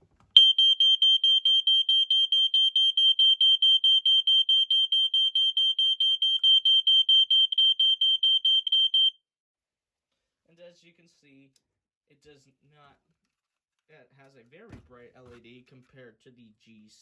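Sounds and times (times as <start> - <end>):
smoke alarm beeping: 0.4 - 9.1.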